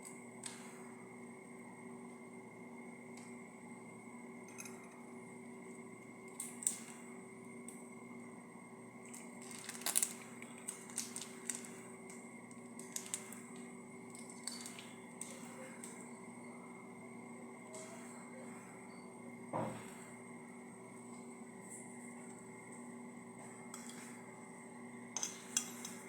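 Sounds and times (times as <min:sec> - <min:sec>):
electrical hum: 0:00.0 - 0:26.0
tableware clicking: 0:25.2 - 0:26.0.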